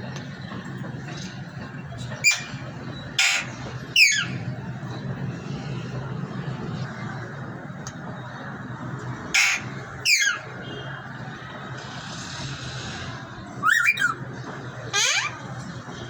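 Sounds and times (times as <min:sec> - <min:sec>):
parrot squawking: 0:03.2 - 0:04.4, 0:09.4 - 0:10.4, 0:13.6 - 0:14.2, 0:14.9 - 0:15.4.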